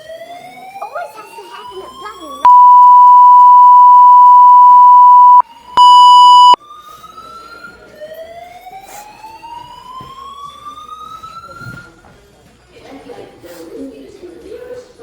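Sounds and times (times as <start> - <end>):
loud fire alarm beep: 2.5 - 6.6.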